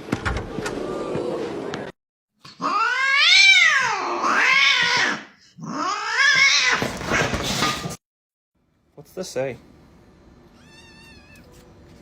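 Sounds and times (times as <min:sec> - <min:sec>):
cat yowling: 0:02.6 - 0:06.8, 0:10.6 - 0:11.6.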